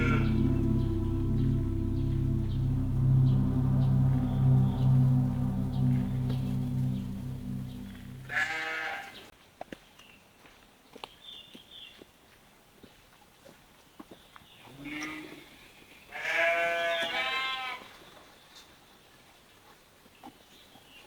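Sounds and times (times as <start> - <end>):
farm animal bleating: 8.3 - 9.1, 16.1 - 17.8.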